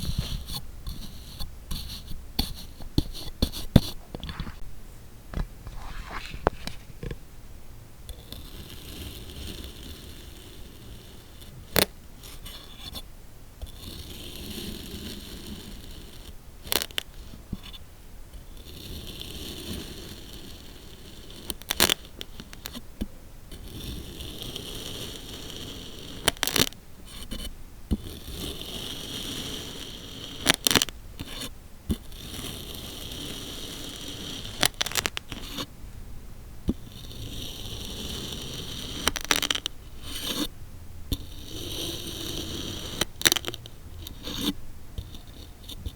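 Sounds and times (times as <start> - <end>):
blade scraping through sand: 5.7 - 6.9.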